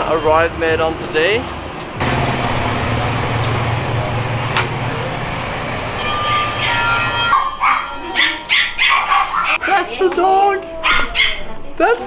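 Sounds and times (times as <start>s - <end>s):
vehicle engine and traffic hum: 0.0s - 7.8s
dog barking: 7.3s - 9.8s, 10.8s - 11.5s.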